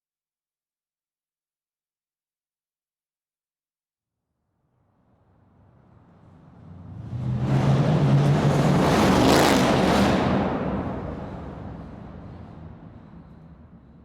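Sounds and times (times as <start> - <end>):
car engine driving past: 5.2 - 14.0.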